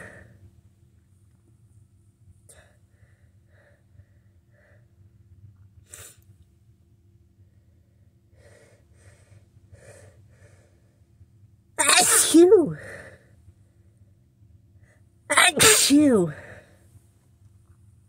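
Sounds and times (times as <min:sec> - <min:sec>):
person breathing: 0:02.5 - 0:05.0, 0:07.5 - 0:11.0
person sneezing: 0:11.8 - 0:12.9, 0:15.3 - 0:16.5.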